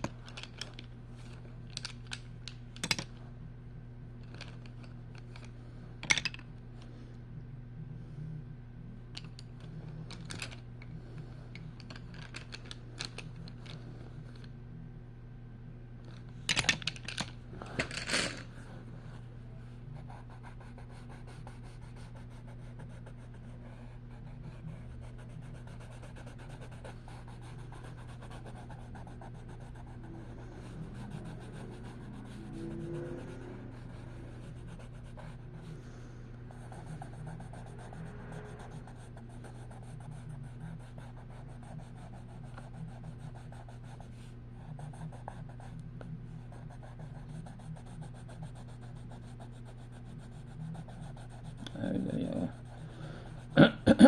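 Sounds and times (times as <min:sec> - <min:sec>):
steady low hum: 0:00.0 - 0:54.0
pencil scratching on paper: 0:20.0 - 0:35.7, 0:36.5 - 0:45.7, 0:46.4 - 0:53.6.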